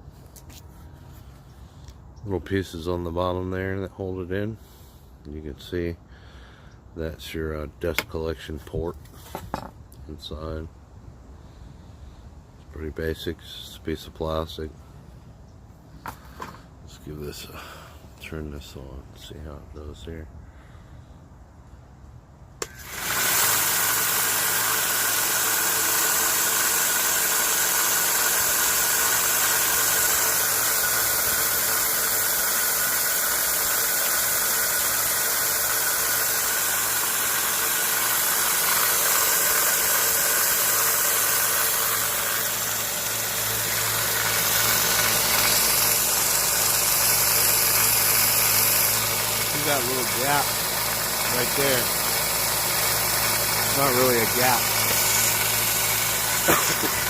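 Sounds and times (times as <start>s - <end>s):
belt sander running: 22.6s - 57.0s.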